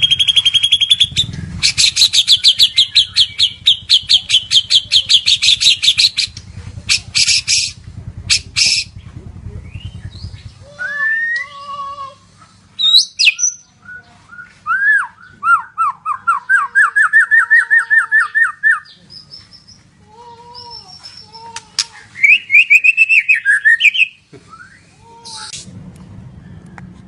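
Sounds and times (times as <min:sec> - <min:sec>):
bird singing whistles: 0:00.0 - 0:06.3, 0:12.8 - 0:19.6, 0:22.2 - 0:25.6.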